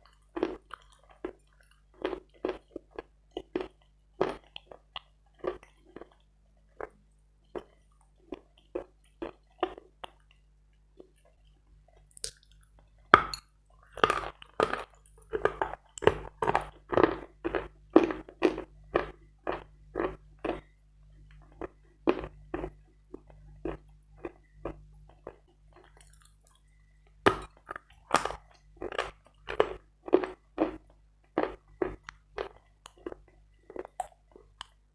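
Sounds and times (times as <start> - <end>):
crunchy chewing: 0.0 - 10.4, 11.0 - 20.7, 21.3 - 26.7, 27.3 - 34.8.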